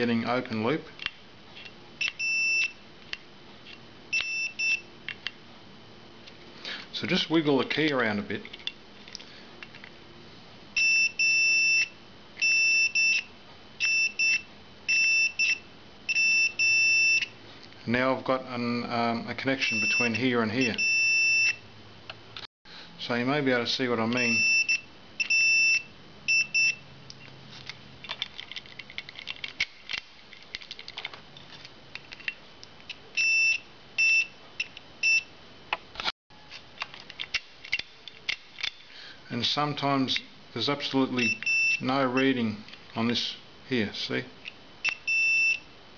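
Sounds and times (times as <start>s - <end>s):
multimeter continuity beeper: 2.0s - 2.8s, 4.1s - 4.9s, 10.7s - 17.4s, 19.6s - 21.7s, 24.1s - 26.9s, 33.2s - 35.3s, 41.2s - 42.4s, 44.8s - 45.7s
key clicks and rattles: 27.2s - 32.4s.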